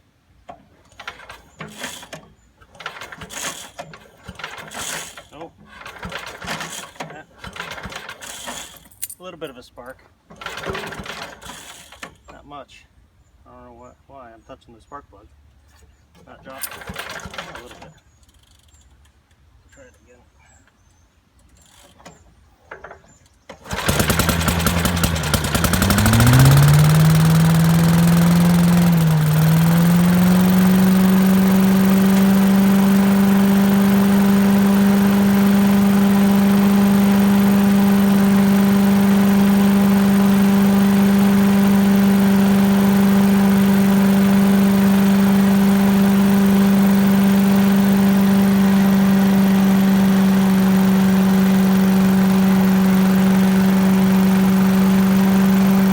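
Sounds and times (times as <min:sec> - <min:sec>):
small engine sputtering and revving: 0:23.6 - 0:55.9.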